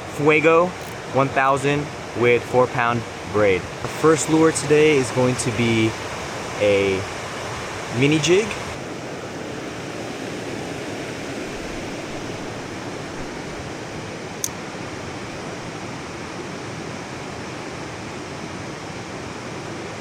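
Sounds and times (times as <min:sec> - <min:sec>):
flowing river water: 0:00.0 - 0:20.0
sharp click: 0:00.8 - 0:01.0, 0:14.4 - 0:14.7.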